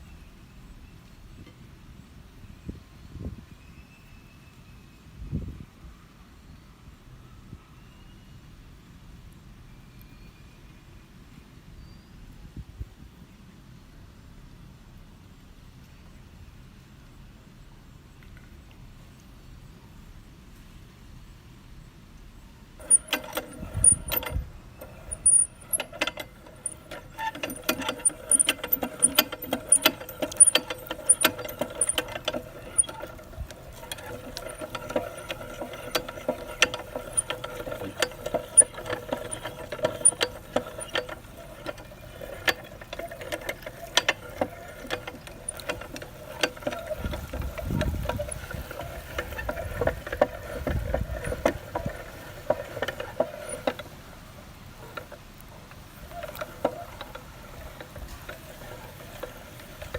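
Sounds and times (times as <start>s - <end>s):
meat grinder humming: 22.8s - 59.9s.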